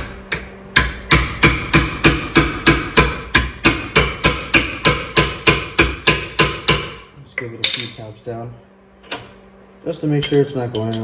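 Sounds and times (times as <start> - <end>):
hammer tapping a wrench: 0.3 - 6.9, 10.2 - 11.0.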